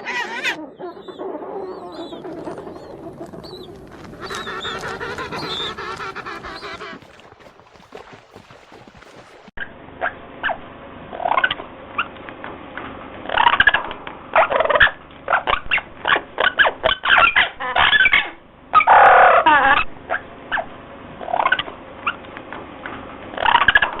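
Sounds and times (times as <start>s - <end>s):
birds calling: 0.0s - 9.5s.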